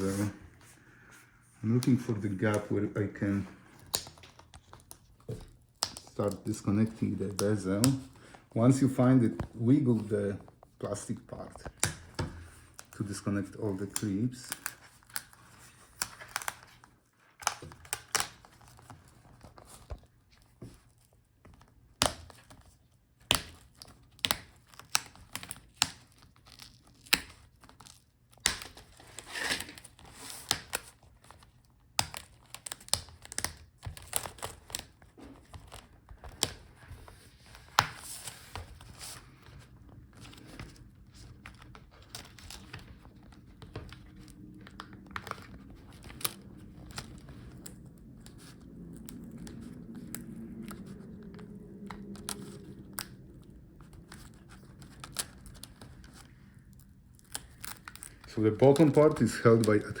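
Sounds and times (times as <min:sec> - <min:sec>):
adhesive crackling: 0:40.2 - 1:00.0.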